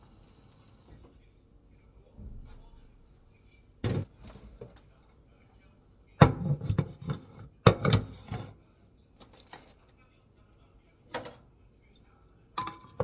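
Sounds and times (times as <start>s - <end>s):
kitchen utensils knocking and clattering: 6.2s - 8.5s, 12.6s - 13.0s.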